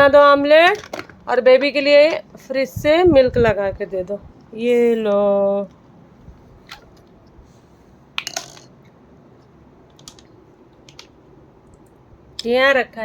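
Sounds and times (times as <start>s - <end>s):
plastic toy pieces clicking: 8.2s - 8.7s, 9.9s - 11.2s.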